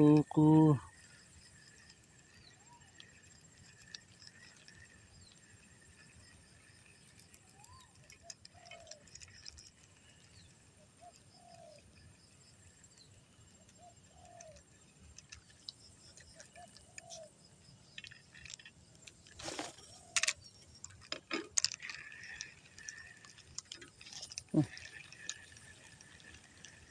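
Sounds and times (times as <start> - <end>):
dove cooing: 8.6 - 9.2, 11.0 - 11.8, 13.8 - 14.6, 16.3 - 17.3.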